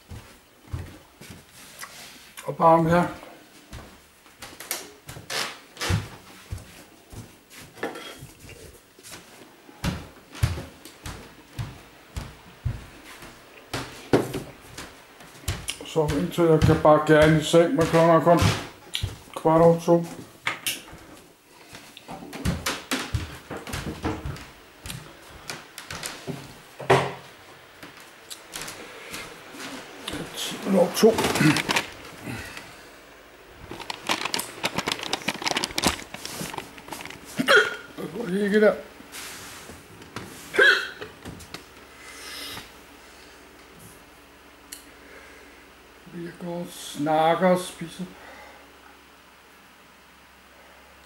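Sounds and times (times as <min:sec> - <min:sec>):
household objects knocking and clicking: 0:33.7 - 0:37.2.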